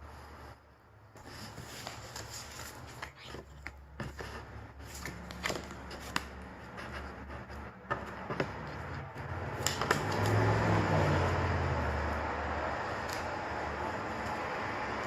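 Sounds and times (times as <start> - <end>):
photo cards and packaging rustling: 1.2 - 10.4.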